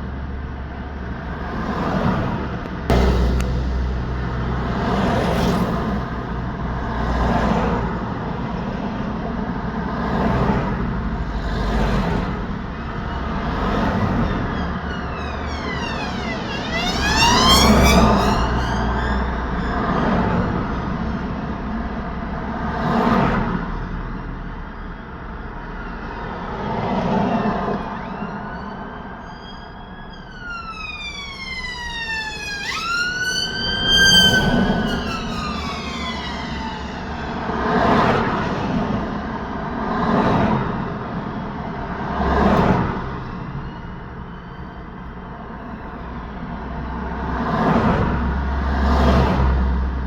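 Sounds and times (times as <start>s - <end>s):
vehicles passing by: 0.0s - 50.0s
emergency vehicle siren wailing: 11.2s - 21.9s, 25.6s - 39.6s.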